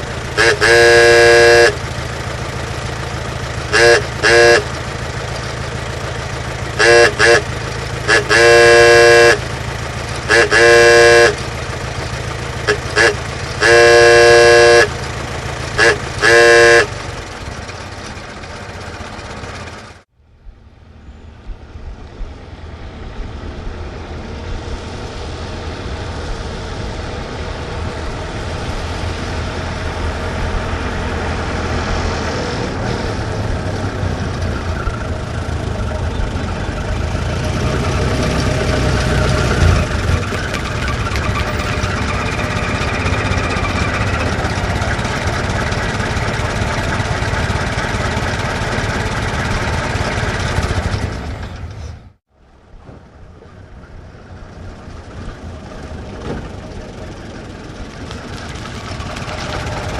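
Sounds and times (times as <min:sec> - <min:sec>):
car engine running: 0:00.0 - 0:20.1, 0:21.0 - 0:52.2, 0:53.0 - 0:59.9
car horn toots: 0:00.2 - 0:02.2, 0:03.6 - 0:05.1, 0:06.7 - 0:17.2.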